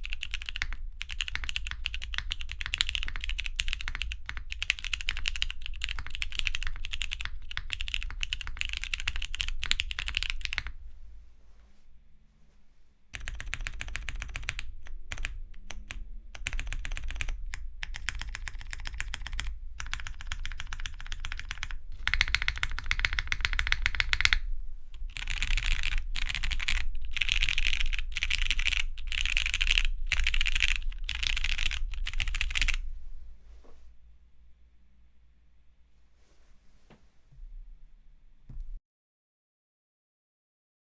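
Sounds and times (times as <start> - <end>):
mechanical keyboard typing: 0.0 - 10.7, 13.2 - 24.4, 25.0 - 32.8.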